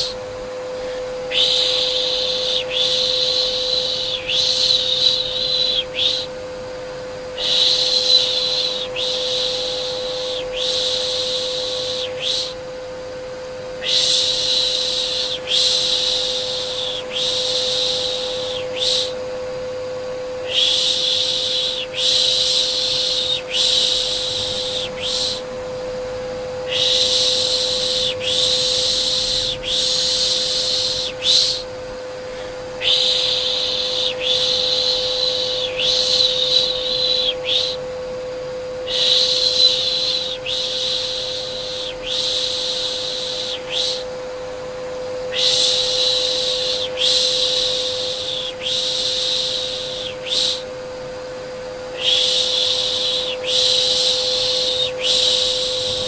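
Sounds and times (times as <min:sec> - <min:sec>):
vacuum cleaner hum: 0:00.0 - 0:56.0
person shushing a baby: 0:00.8 - 0:06.3, 0:07.4 - 0:09.7, 0:13.8 - 0:19.2, 0:20.4 - 0:25.5, 0:26.7 - 0:31.7, 0:32.3 - 0:37.8.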